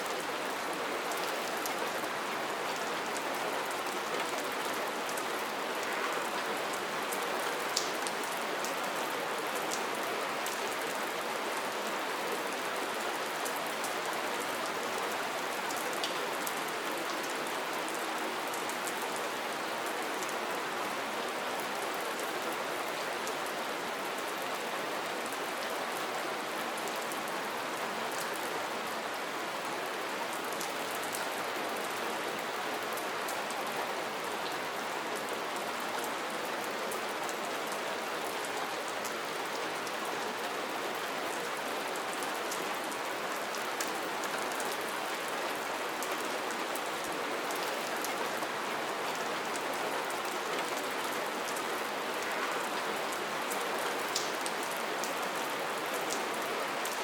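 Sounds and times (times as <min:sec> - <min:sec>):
steady rain falling: 0:00.0 - 0:57.0.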